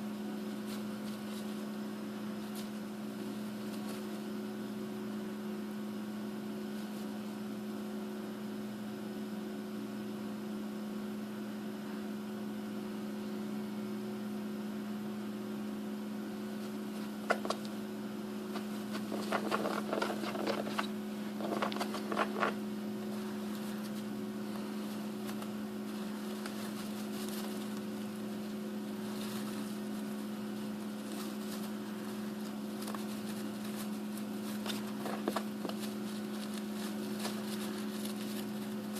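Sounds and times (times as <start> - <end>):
electrical hum: 0.0 - 38.9
hamster scratching bedding: 0.4 - 4.4, 16.7 - 17.8, 18.4 - 38.9.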